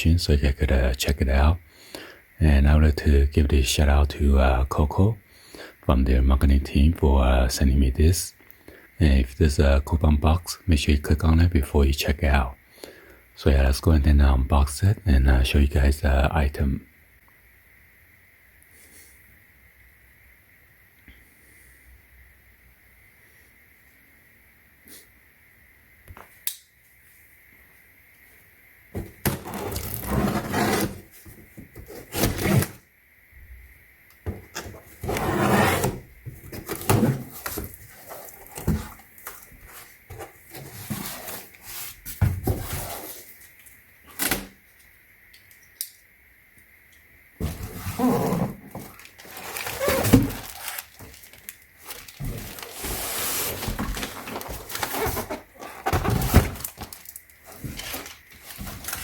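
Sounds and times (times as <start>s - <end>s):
packaging rustling and crinkling: 29.0s - 32.8s, 34.6s - 43.3s, 47.4s - 59.0s.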